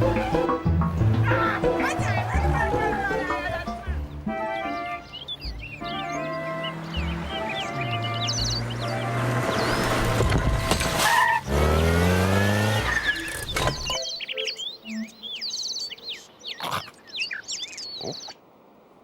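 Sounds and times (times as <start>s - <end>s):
engine-like revving with squeal: 5.8s - 14.0s.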